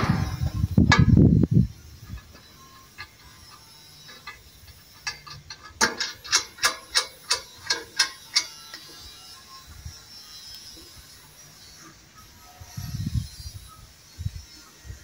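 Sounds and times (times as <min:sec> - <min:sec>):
sharp metallic clicks: 0:02.2 - 0:08.9.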